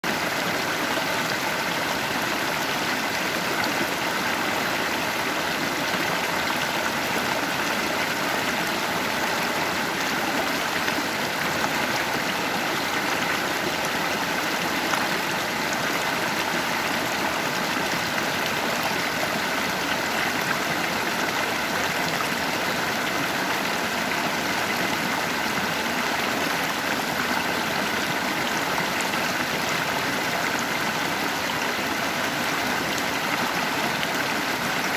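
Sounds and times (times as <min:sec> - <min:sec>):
stream flowing over rocks: 0:00.0 - 0:34.9.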